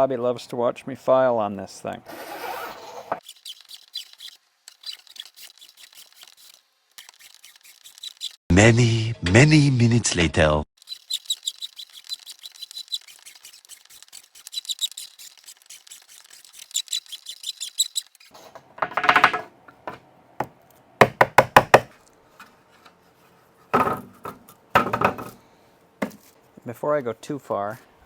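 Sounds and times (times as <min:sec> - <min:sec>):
hand file rasping: 0:10.8 - 0:18.4
sharp knocks: 0:21.0 - 0:21.9.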